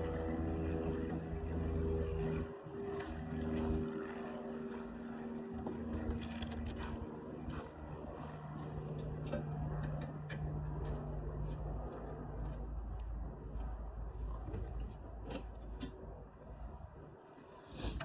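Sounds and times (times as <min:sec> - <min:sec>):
steady low hum: 0:00.0 - 0:18.0
light clicks and taps of parts: 0:08.9 - 0:11.6.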